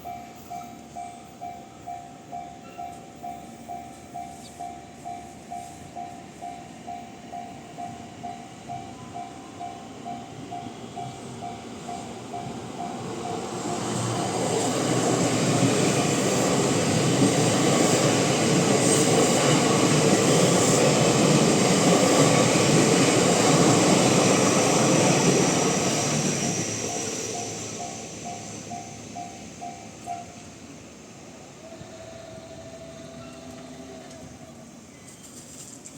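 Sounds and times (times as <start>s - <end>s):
level crossing alarm bell: 0.0s - 14.4s, 26.4s - 30.5s
electric train passing: 0.0s - 35.9s.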